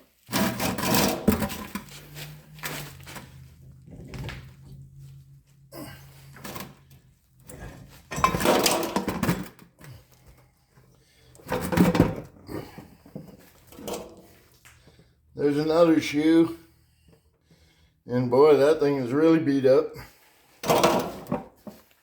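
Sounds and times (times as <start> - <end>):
objects clunking and scraping: 0.0 - 15.2, 20.1 - 22.0.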